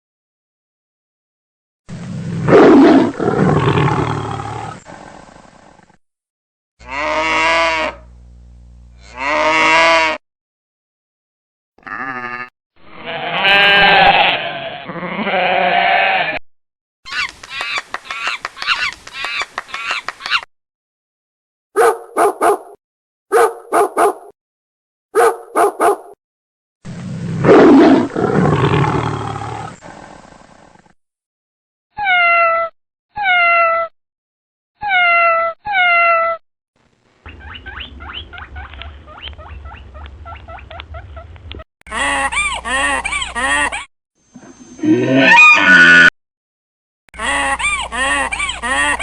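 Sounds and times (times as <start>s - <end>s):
animal roar: 2.0s - 5.9s, 27.0s - 30.8s, 44.4s - 46.1s
animal calls: 37.2s - 46.1s.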